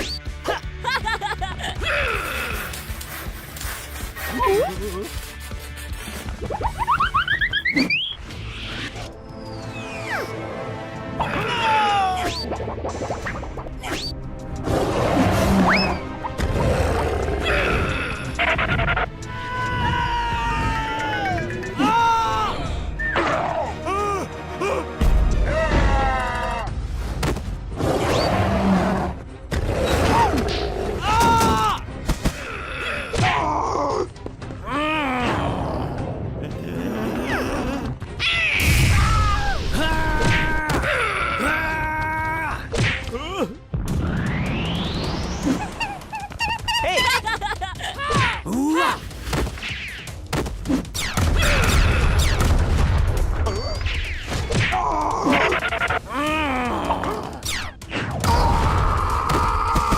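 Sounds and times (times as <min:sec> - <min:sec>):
music: 0:00.0 - 0:59.9.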